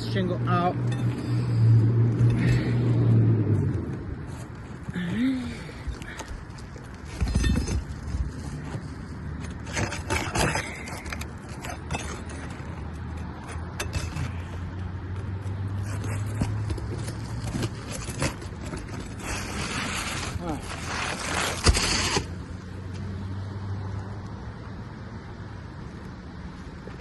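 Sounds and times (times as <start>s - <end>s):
low vehicle engine hum: 0.0s - 27.0s
shingle scraping and tool clicks: 6.0s - 14.7s, 15.8s - 22.4s.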